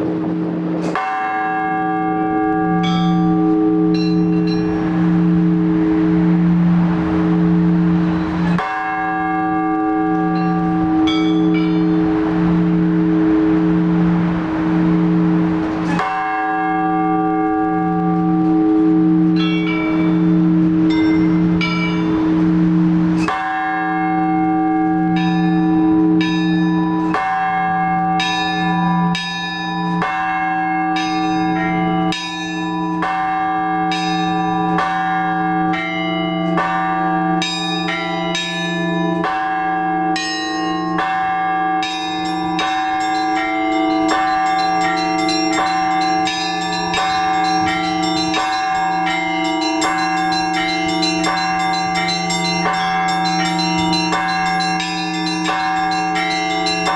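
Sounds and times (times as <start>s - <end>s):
large bell low tone: 0.0s - 56.9s
small bells striking: 0.8s - 5.1s, 8.2s - 12.5s, 15.8s - 56.9s.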